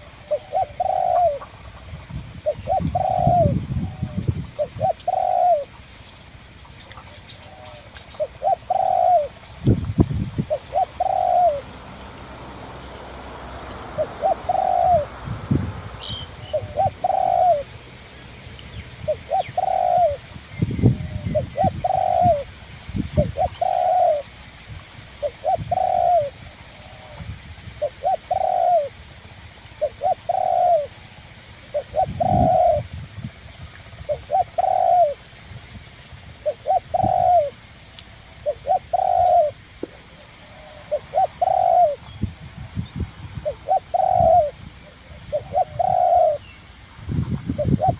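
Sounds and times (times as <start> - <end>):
dove cooing: 0.0 - 5.8, 6.8 - 9.5, 10.4 - 12.1, 13.1 - 18.0, 19.0 - 22.6, 23.2 - 24.4, 25.2 - 27.2, 27.8 - 29.0, 29.8 - 31.0, 31.7 - 32.9, 34.0 - 35.3, 36.4 - 37.6, 38.3 - 42.2, 43.4 - 46.5, 47.5 - 47.9.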